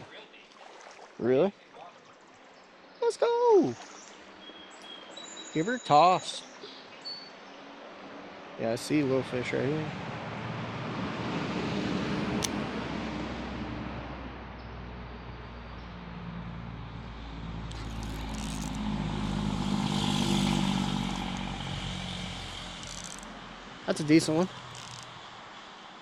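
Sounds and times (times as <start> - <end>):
vehicle passing by: 9.0 - 26.0.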